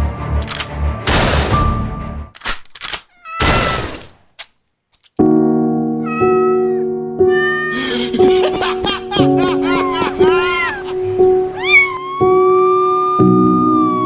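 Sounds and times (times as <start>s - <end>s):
kittens mewing: 9.5s - 14.0s.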